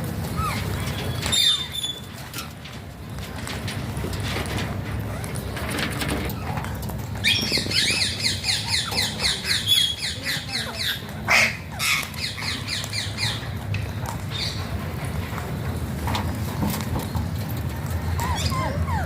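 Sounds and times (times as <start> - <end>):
parakeet squawking: 7.2 - 13.4.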